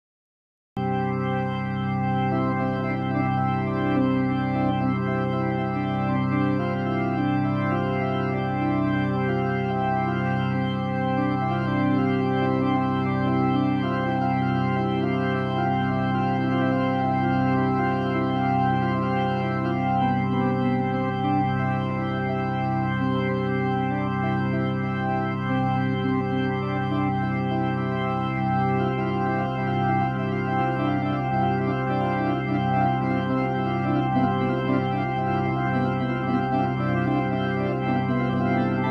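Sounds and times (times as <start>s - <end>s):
held keyboard chords: 0.8s - 38.9s.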